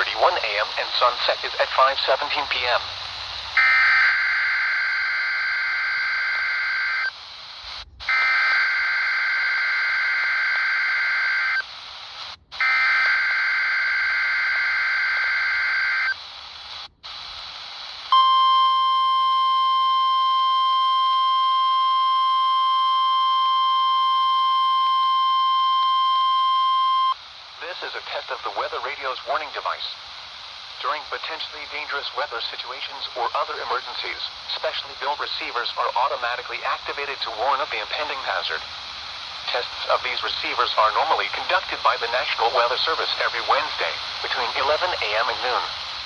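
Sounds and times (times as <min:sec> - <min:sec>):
radio reception hiss: 0:00.0 - 0:46.0
single-pitch warning alarm tone: 0:03.6 - 0:07.1, 0:08.1 - 0:11.6, 0:12.6 - 0:16.2, 0:18.1 - 0:27.2.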